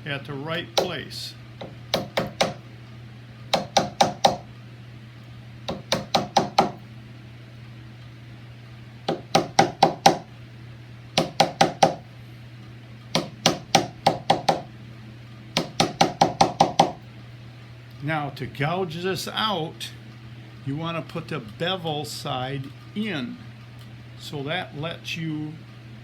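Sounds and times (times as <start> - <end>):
mallet tapping wood chisel: 0.8 - 1.0, 1.6 - 2.6, 3.5 - 4.4, 5.7 - 6.8, 9.1 - 10.3, 11.2 - 12.0, 13.2 - 14.7, 15.6 - 17.0.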